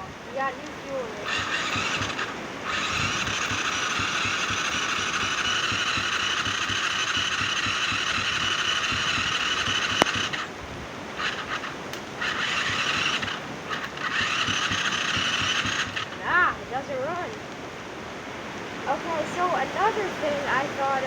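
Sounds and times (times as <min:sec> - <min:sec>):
engine cranking on starter: 0:00.0 - 0:16.6.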